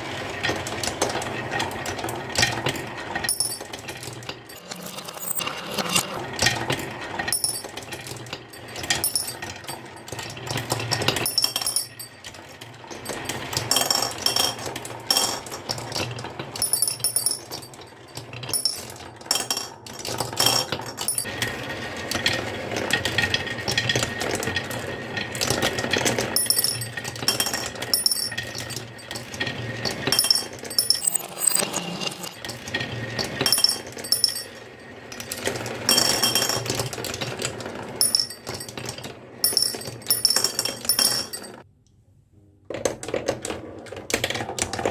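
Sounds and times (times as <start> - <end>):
marbles rolling on wooden run: 0.3 - 41.6.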